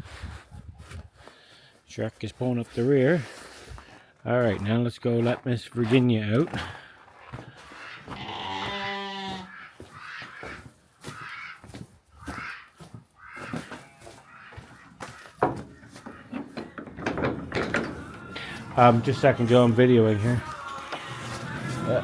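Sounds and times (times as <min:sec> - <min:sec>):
sheep bleating: 0:08.1 - 0:10.5, 0:13.2 - 0:14.6
scattered knocks: 0:15.0 - 0:19.2.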